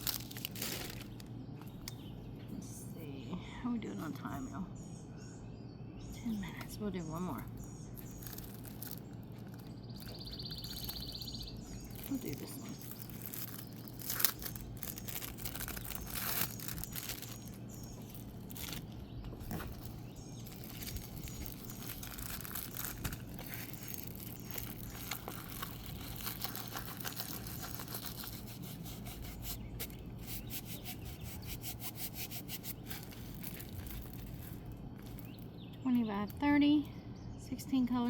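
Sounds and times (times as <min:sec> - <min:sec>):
plastic packaging crinkling: 0:00.0 - 0:02.0, 0:07.5 - 0:31.0, 0:31.8 - 0:35.4
small clicks and scrapes: 0:11.9 - 0:35.4.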